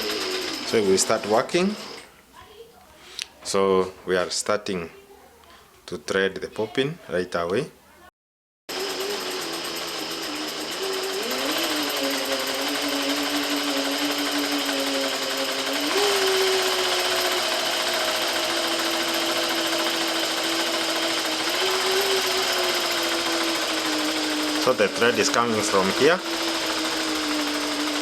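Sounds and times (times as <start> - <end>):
sewing machine motor whining: 0.0 - 2.1, 8.7 - 28.0.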